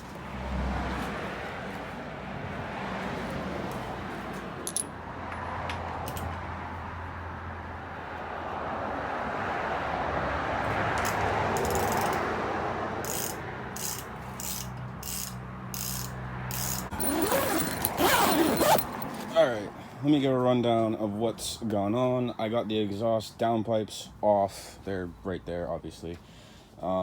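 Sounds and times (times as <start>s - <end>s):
hand tools clinking on metal: 13.1s - 19.3s.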